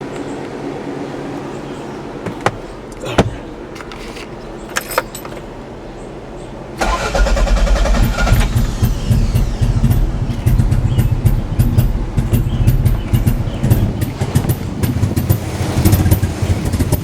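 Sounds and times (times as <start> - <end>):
car engine cranking and idling roughly: 6.8 - 17.0.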